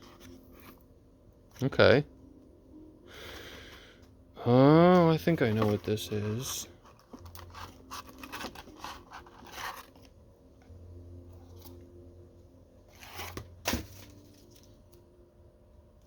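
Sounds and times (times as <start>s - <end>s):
packaging rustling and scraping: 4.9s - 10.2s, 12.8s - 15.0s.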